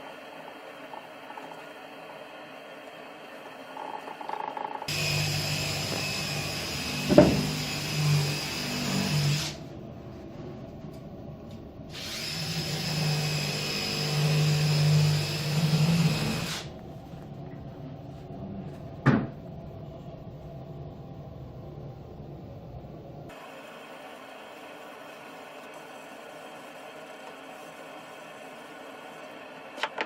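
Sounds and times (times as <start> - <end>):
electric power tool whining: 4.9 - 9.6, 11.9 - 16.7.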